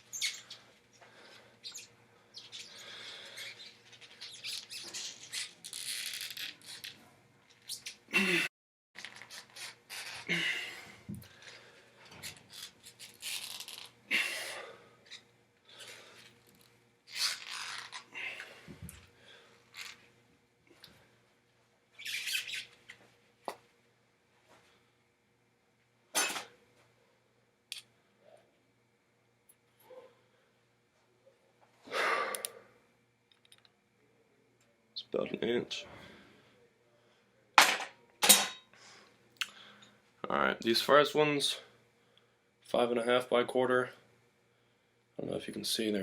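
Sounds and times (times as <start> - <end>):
squeaks: 22.0 - 22.7.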